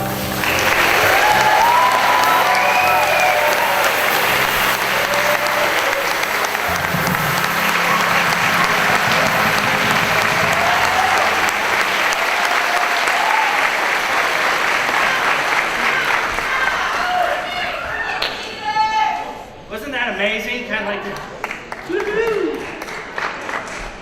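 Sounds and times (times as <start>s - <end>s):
audience applauding: 0.0s - 18.4s, 21.1s - 24.0s
shouts and whoops: 0.5s - 6.8s, 10.0s - 13.8s, 14.9s - 19.4s, 21.9s - 22.6s.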